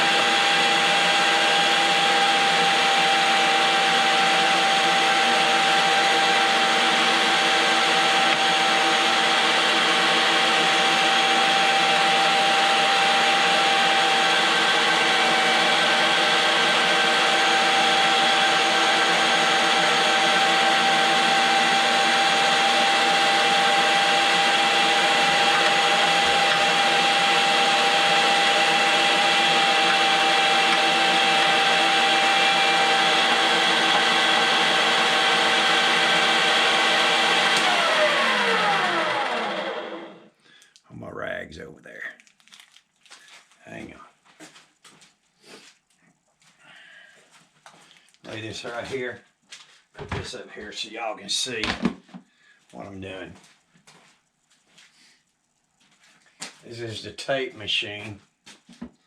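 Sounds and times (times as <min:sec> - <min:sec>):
electric meat grinder whining: 0:00.0 - 0:40.4.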